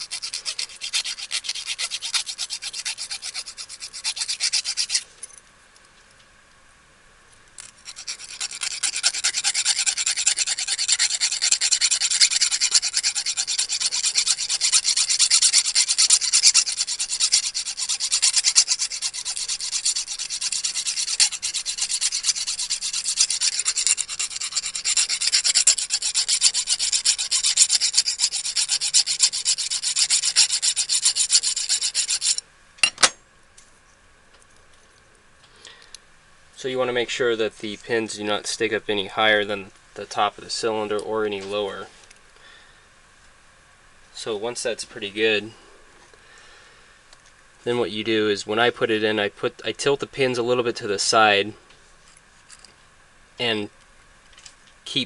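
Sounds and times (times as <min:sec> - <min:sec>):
metal file rasping: 0:00.0 - 0:05.1, 0:07.8 - 0:32.4.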